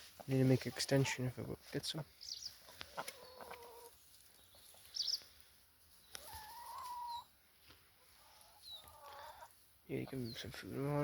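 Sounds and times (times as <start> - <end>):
chicken chirp: 2.2 - 5.3, 6.0 - 7.4, 8.0 - 10.5
hen call: 6.2 - 7.3.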